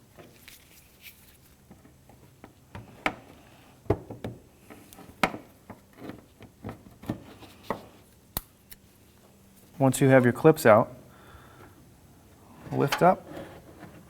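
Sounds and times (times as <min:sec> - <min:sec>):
light scraping: 0:12.5 - 0:14.0.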